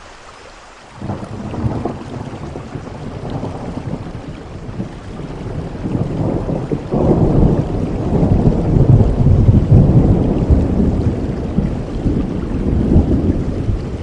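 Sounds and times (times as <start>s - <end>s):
steady rain: 0.0s - 14.0s
thunder rolling: 1.0s - 14.0s.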